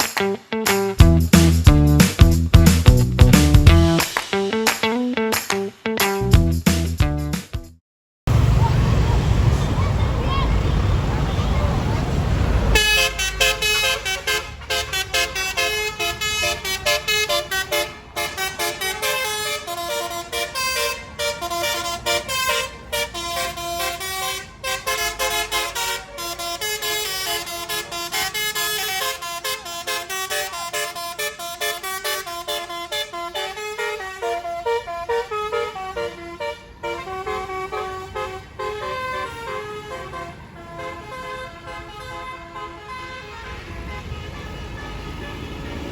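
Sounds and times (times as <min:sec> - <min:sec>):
bus musical horn melody: 0:12.7 - 0:45.9.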